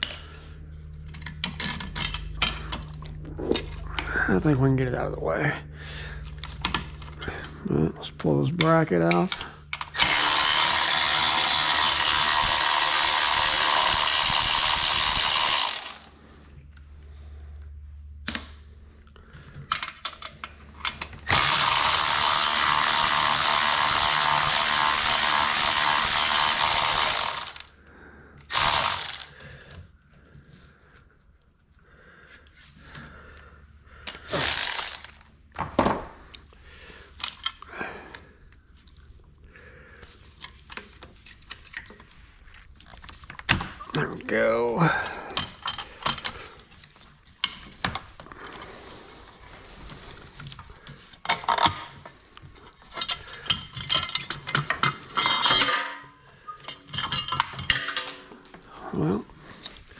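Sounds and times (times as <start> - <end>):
tools and parts clinking: 0.9 - 4.3, 8.0 - 10.9, 19.4 - 21.8, 28.4 - 29.9, 34.0 - 35.9, 37.1 - 38.2, 40.2 - 44.0, 45.1 - 48.6, 50.4 - 59.9
handheld power tool running: 9.8 - 16.1, 21.2 - 27.8, 28.5 - 29.4, 34.3 - 35.3.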